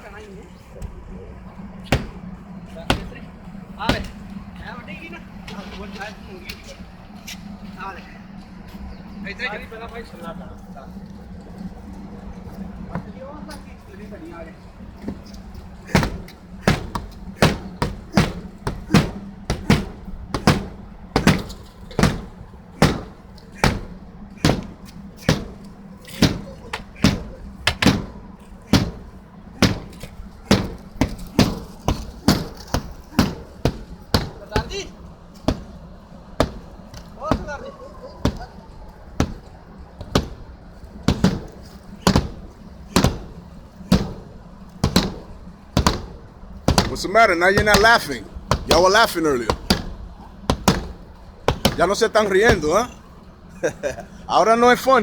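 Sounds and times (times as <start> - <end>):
steady low hum: 0.0 - 55.0
hammer blows on roof: 1.8 - 4.3, 14.8 - 53.7.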